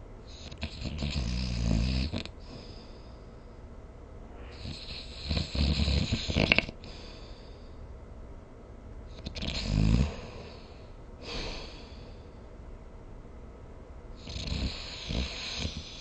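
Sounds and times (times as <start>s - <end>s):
person snoring: 4.5s - 7.3s, 9.2s - 12.0s, 14.2s - 16.0s.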